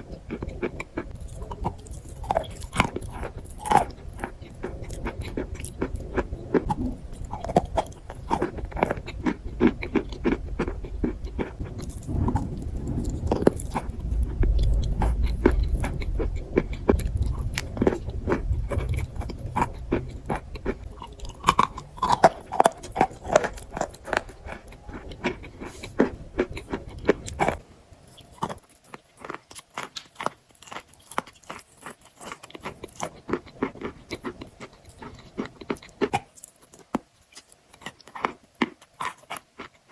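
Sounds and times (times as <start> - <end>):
low hum: 0.0 - 28.5
chalk crunching being chewed: 0.0 - 39.9.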